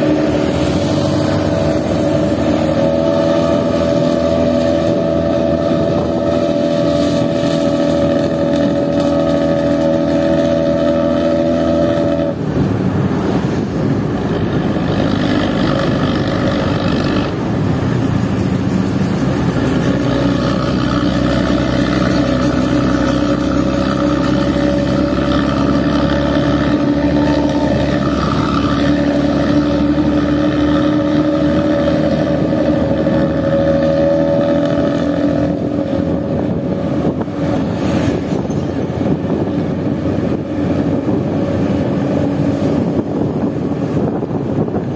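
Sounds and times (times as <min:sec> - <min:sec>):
diesel bus engine running: 0:00.0 - 0:44.9.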